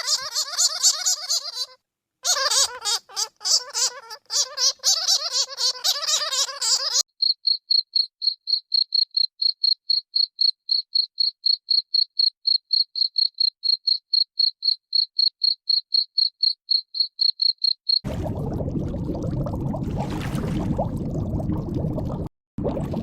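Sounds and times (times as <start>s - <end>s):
cricket chirping: 7.2s - 18.0s.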